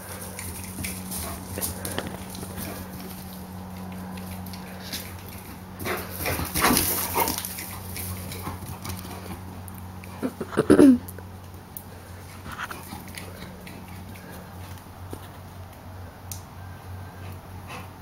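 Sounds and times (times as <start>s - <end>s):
animals scuffling: 0.0s - 10.6s, 11.2s - 15.9s.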